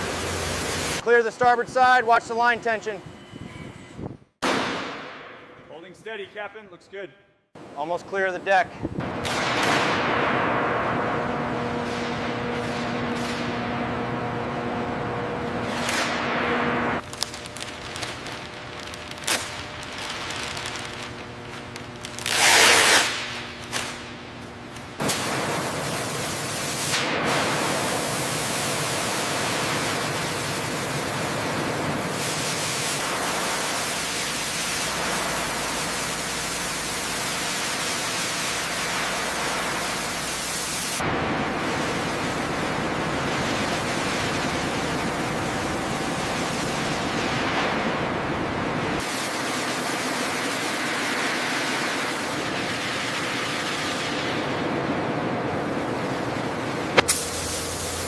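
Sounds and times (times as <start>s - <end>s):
steady loud hiss: 0.0s - 2.9s, 15.6s - 24.1s, 25.0s - 58.0s.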